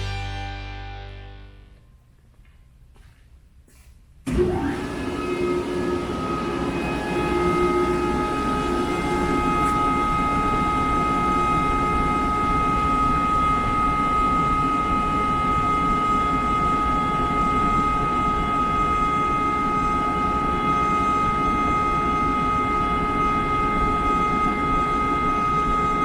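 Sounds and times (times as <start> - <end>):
air compressor running: 4.3 - 26.0.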